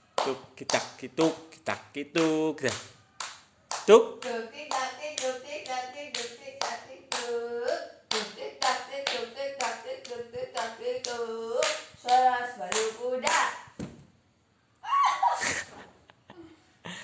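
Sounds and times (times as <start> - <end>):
hands clapping a beat: 0.2 - 1.4, 2.1 - 13.8
person singing: 3.9 - 13.6.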